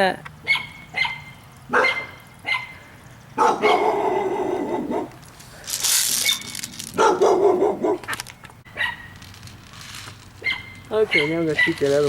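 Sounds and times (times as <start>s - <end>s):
dog barking: 0.5s - 2.7s, 3.4s - 5.1s, 7.0s - 8.0s, 8.8s - 9.1s, 10.4s - 11.8s.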